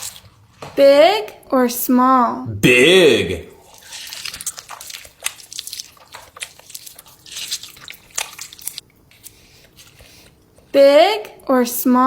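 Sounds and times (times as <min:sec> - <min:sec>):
person chewing and crunching: 0:03.0 - 0:10.7.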